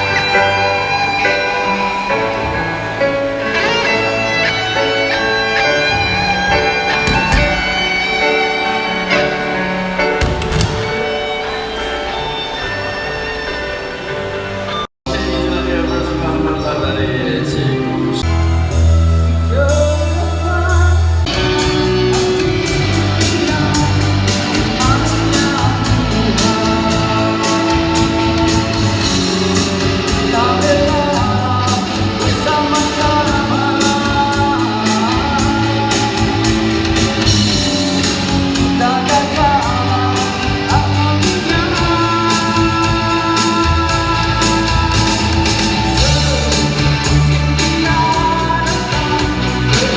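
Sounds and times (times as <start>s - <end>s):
live rock band: 0.0s - 49.9s
person singing: 15.1s - 49.9s.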